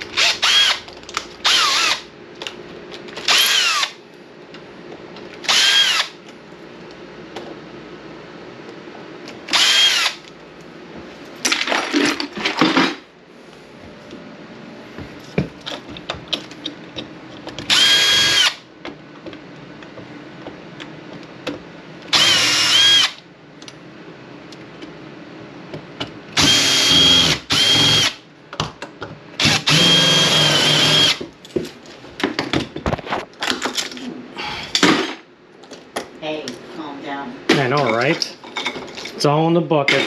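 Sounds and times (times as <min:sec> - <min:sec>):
power drill whining: 0:00.2 - 0:00.8, 0:01.4 - 0:02.0, 0:03.3 - 0:04.0, 0:05.5 - 0:06.2, 0:09.5 - 0:10.2, 0:17.7 - 0:18.6, 0:22.1 - 0:23.2, 0:26.4 - 0:28.2, 0:29.4 - 0:31.2.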